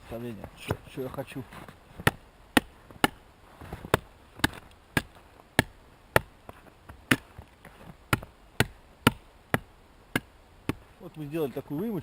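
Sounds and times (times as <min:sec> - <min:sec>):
axe chopping into wood: 0:02.0 - 0:03.2, 0:03.8 - 0:06.4, 0:07.0 - 0:07.4, 0:08.1 - 0:10.9.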